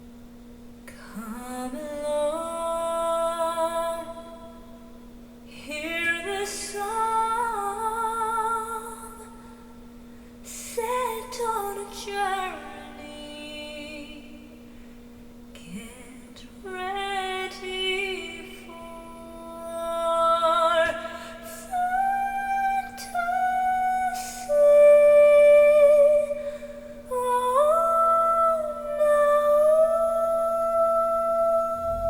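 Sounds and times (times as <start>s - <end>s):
woman singing long held notes: 0.9s - 4.8s, 5.5s - 9.6s, 10.4s - 14.6s, 15.5s - 32.0s
low sustained note: 27.1s - 32.0s.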